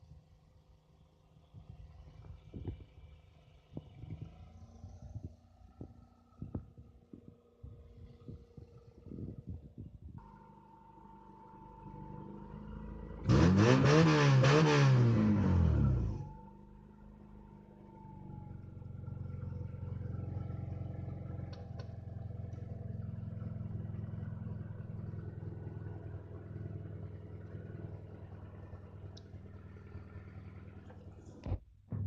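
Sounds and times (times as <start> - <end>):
car engine idling: 15.2 - 32.0.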